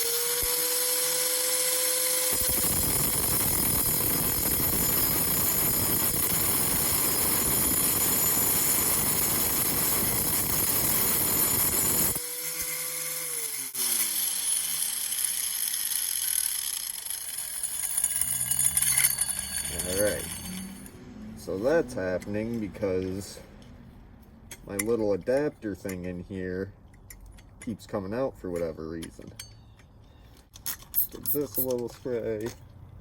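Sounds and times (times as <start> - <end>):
angle grinder motor whine: 0.0 - 21.6
blade grinding rock: 0.0 - 23.4.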